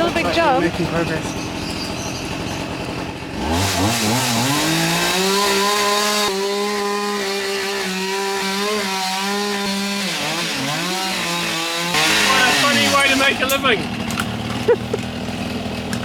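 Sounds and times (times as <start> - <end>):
chainsaw engine revving: 0.0 - 16.0.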